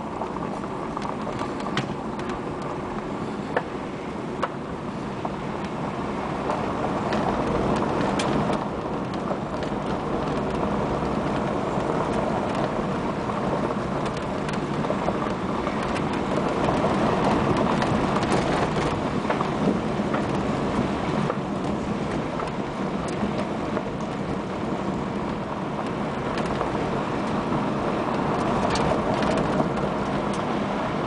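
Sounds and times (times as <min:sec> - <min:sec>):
vehicle engine and tyres rumbling: 0:00.0 - 0:31.0
small clicks and rattles: 0:25.2 - 0:27.4, 0:28.1 - 0:30.6.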